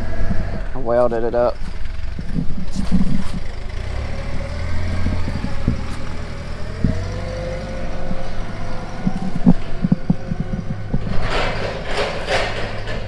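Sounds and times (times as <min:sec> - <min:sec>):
clunks: 0:00.0 - 0:13.0
tractor engine idling: 0:00.0 - 0:13.0.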